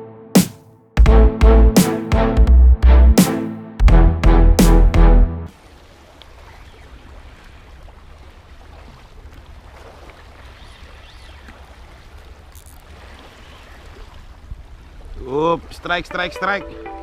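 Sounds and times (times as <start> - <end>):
sea water: 5.5 - 17.0.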